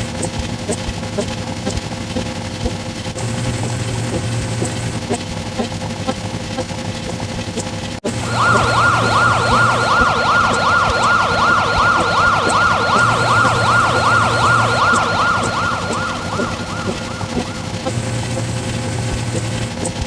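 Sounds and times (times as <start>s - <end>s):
yelp siren: 8.1s - 17.9s.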